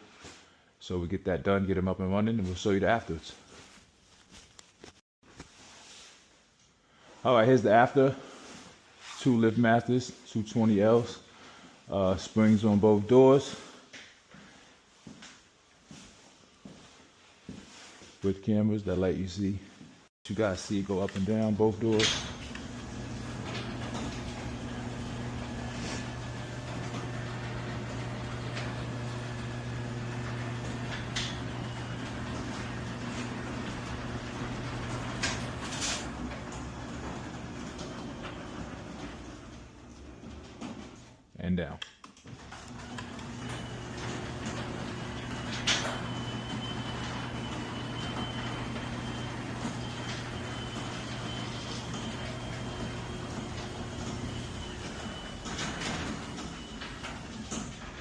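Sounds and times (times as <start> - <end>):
garage door motor hum: 20.5 - 41.2, 42.3 - 58.0
door sections clicking and rattling: 21.1 - 41.2, 42.2 - 58.0.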